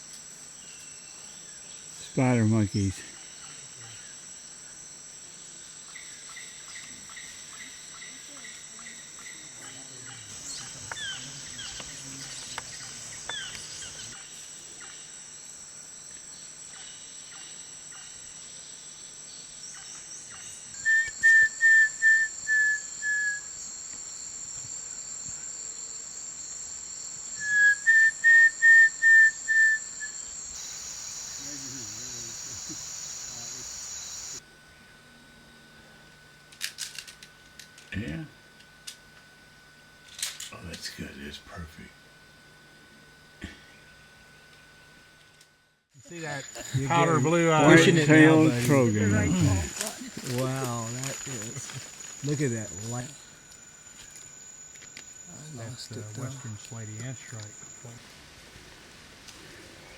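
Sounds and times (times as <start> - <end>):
insect chorus: 0.0 - 45.0, 45.9 - 59.9.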